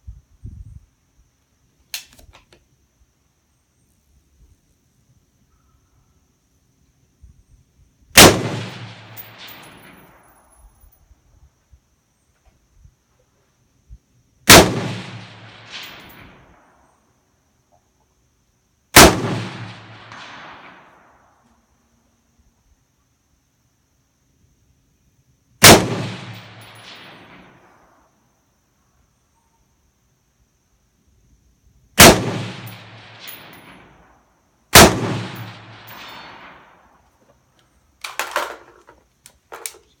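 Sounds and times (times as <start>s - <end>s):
rifle shots: 8.2s - 10.0s, 14.5s - 16.4s, 19.0s - 21.0s, 25.6s - 27.6s, 32.0s - 33.9s, 34.7s - 36.7s
rolling echo: 8.2s - 10.4s, 14.5s - 17.0s, 19.0s - 21.5s, 25.6s - 28.0s, 32.0s - 34.1s, 34.8s - 37.0s
metallic clicks and clatter: 38.0s - 40.0s.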